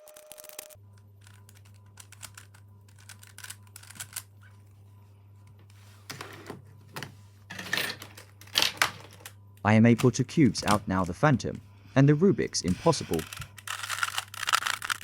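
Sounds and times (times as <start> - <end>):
steady low hum: 0.8 - 15.0
plastic puzzle layers clicking: 13.2 - 15.0.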